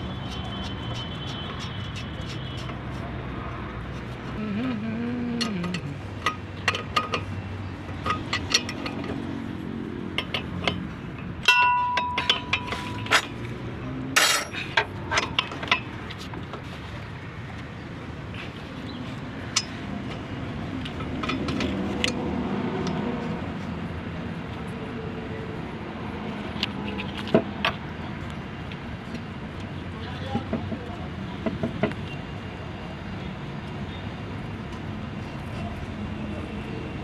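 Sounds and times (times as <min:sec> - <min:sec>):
struck metal ringing: 0:11.4 - 0:12.8
metal tools clinking: 0:11.4 - 0:13.4, 0:14.2 - 0:15.9.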